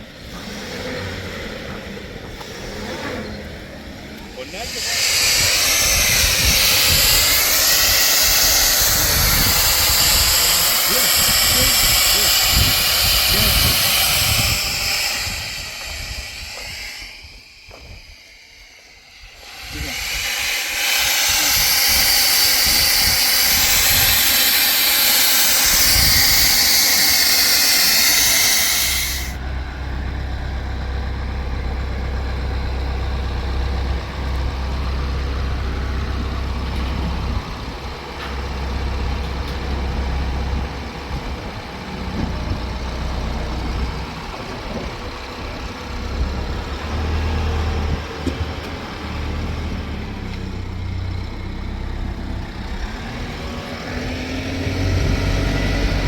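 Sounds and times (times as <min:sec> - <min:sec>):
steady low rumble: 0:01.4 - 0:46.8
loud steady hiss: 0:04.2 - 0:29.4.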